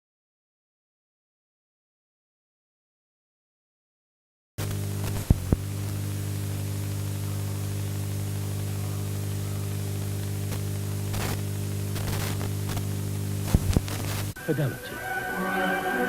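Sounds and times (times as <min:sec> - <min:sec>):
electrical mains hum: 0:04.6 - 0:16.0
static hiss: 0:04.6 - 0:16.0
sharp clicks: 0:12.0 - 0:14.4.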